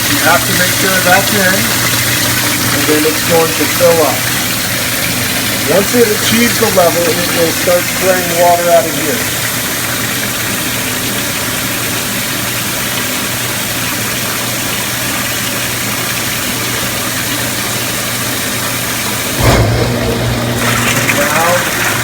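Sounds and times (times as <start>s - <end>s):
low electric hum: 0.0s - 9.6s, 19.3s - 22.0s
pump surge and water spraying: 0.0s - 22.0s
water rushing into tank: 0.0s - 22.0s.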